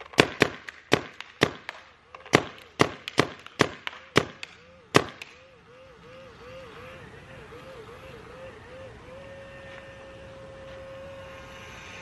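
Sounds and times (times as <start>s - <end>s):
paintball marker shots: 0.0s - 5.5s.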